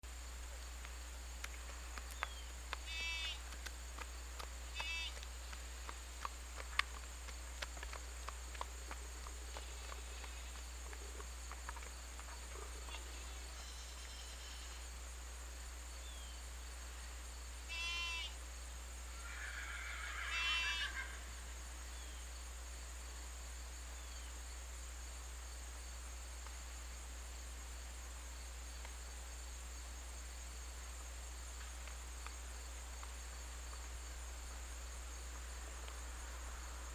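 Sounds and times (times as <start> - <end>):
steady low hum: 0.0 - 17.7.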